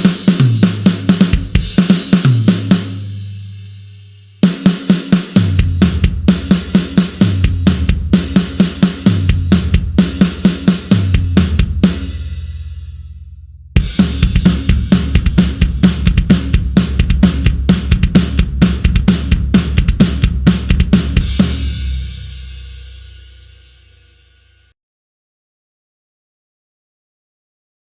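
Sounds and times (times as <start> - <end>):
fast drum kit beat: 0.0 - 3.4, 4.4 - 13.1, 13.8 - 23.8.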